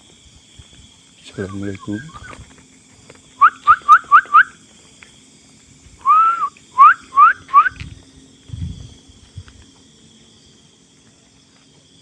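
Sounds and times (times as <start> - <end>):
loud rising whistles: 1.3 - 2.4, 3.4 - 4.6, 6.0 - 7.8.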